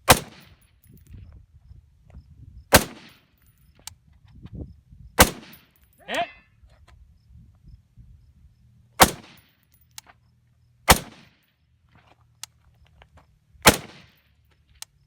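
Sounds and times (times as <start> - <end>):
rifle shots with echo: 0.0 - 0.6, 2.7 - 3.2, 5.2 - 5.7, 9.0 - 9.5, 10.9 - 11.4, 13.6 - 14.2.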